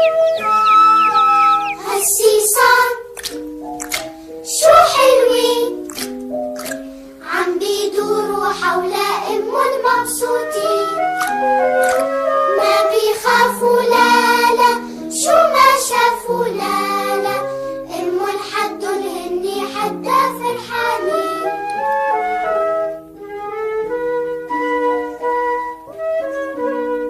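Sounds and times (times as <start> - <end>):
instrumental melody: 0.0 - 27.0
child singing wordless melody: 1.7 - 3.1, 4.4 - 6.0, 7.2 - 11.5, 12.5 - 21.9.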